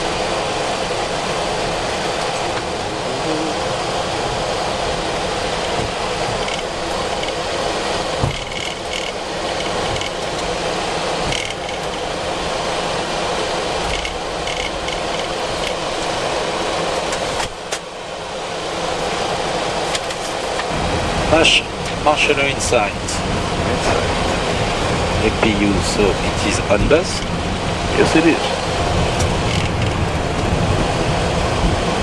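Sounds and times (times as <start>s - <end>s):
jet engines idling hiss and hum: 0.0s - 32.0s.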